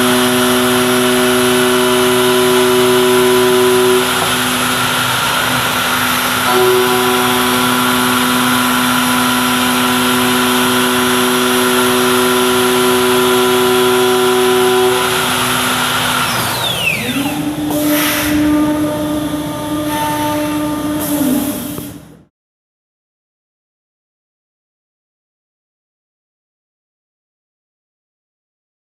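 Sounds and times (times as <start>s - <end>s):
falling whine: 0.0s - 22.2s
machine spindles running: 0.0s - 22.2s
hiss of cutting: 0.2s - 18.6s, 21.0s - 22.0s.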